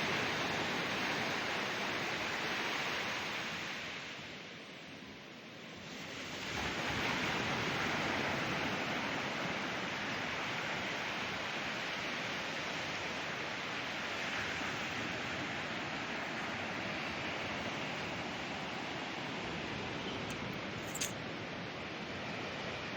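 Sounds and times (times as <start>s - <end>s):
ocean surf on a beach: 0.0s - 22.9s.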